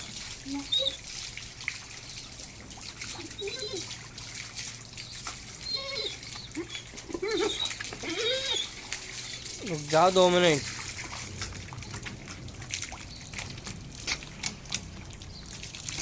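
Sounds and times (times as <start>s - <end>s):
water trickling and splashing: 0.0s - 16.0s
dog whining: 0.4s - 1.2s, 3.1s - 4.0s, 5.5s - 9.6s.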